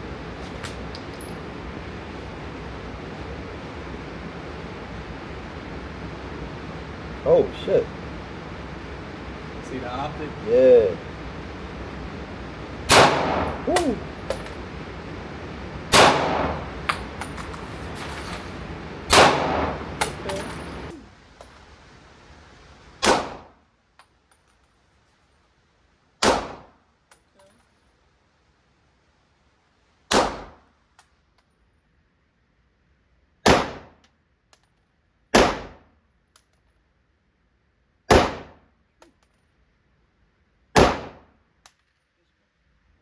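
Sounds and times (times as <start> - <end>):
pistol shots: 12.9 - 14.0, 15.9 - 17.4, 19.1 - 20.6, 23.0 - 23.5, 26.2 - 26.7, 30.1 - 30.6, 33.4 - 34.0, 35.3 - 35.8, 38.1 - 38.6, 40.8 - 41.3.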